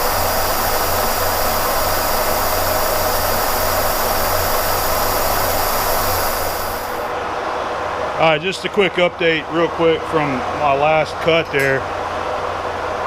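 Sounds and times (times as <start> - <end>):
milling machine cutting steel: 0.0 - 7.0.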